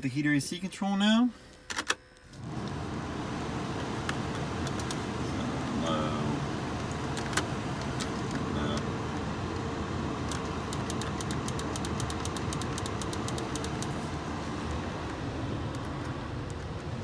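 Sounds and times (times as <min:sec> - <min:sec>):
steady hum: 0:00.0 - 0:17.0
control knob clicking: 0:10.3 - 0:13.9
sharp click: 0:10.3 - 0:13.9.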